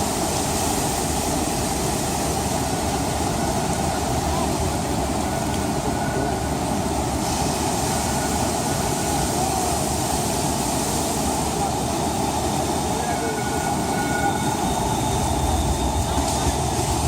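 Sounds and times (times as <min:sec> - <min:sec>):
light-rail train running: 0:00.0 - 0:17.0
people talking: 0:04.1 - 0:06.5, 0:08.8 - 0:12.2, 0:12.8 - 0:17.0.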